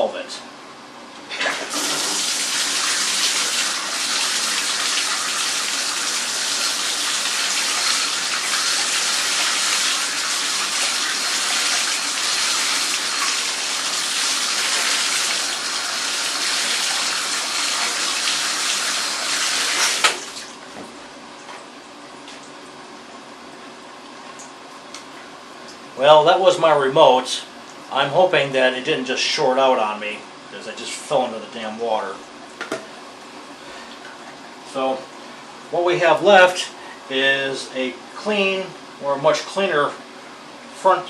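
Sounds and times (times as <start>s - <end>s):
water gushing from tap: 1.4s - 20.7s.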